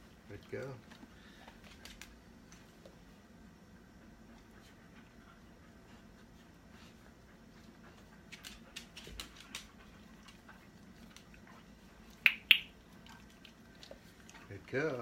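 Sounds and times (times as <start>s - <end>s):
dog mouth ticks and clicks: 12.2s - 12.8s.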